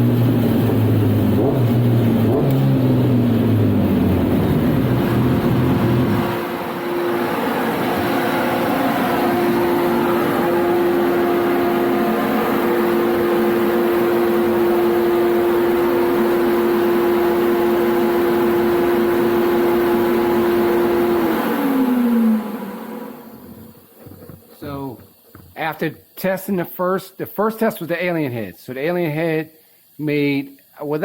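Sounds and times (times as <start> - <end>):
motorcycle engine revving on dyno: 0.0 - 24.3.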